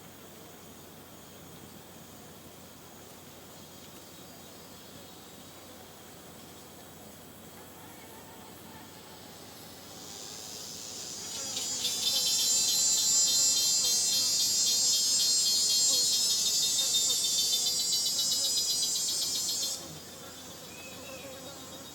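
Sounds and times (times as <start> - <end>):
rainforest background: 0.0 - 21.9
high-pitched insect buzz: 9.2 - 21.9.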